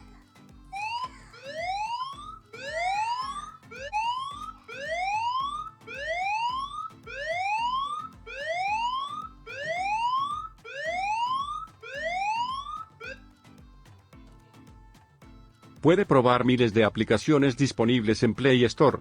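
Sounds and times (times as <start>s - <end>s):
phone alarm siren wail: 0.7s - 13.3s.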